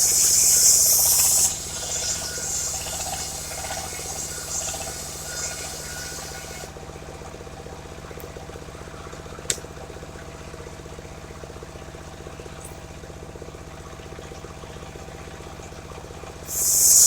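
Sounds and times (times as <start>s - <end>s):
sawmill engine running: 0.0s - 11.7s, 16.3s - 17.0s.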